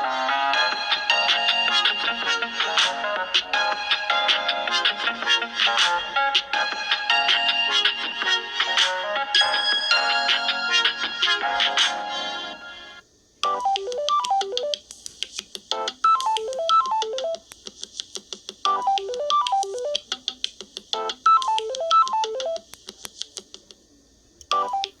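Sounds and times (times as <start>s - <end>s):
phone ringtone melody: 0.5s - 12.1s, 13.4s - 14.8s, 15.8s - 17.4s, 18.7s - 20.0s, 21.0s - 22.6s, 24.5s - 25.0s
fast ticking beat: 13.4s - 23.8s.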